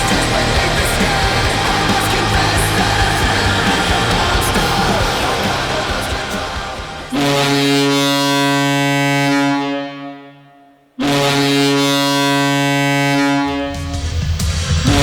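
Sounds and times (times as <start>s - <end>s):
arena goal horn blasts: 7.2s - 13.8s.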